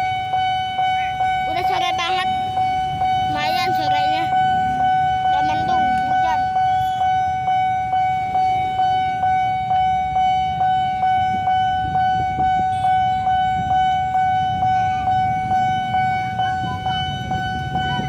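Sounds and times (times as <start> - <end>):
level crossing warning bell: 0.0 - 18.0.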